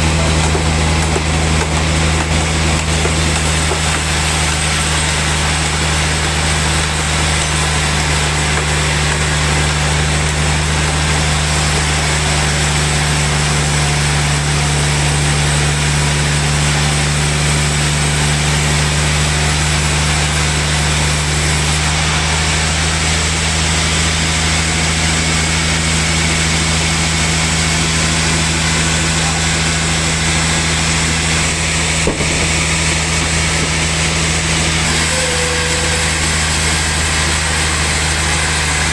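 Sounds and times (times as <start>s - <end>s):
sawmill machinery droning: 0.0s - 38.9s
hiss: 34.8s - 38.9s.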